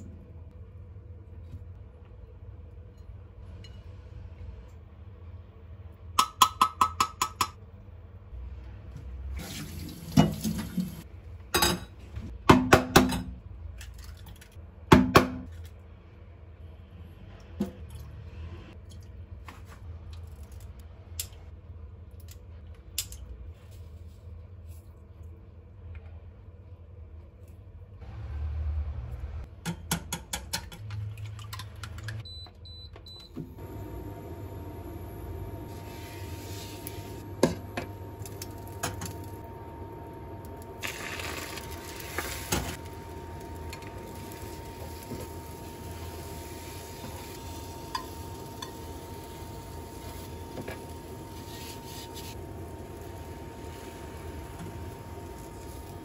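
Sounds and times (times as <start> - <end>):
tap water running: 9.4 - 11.0.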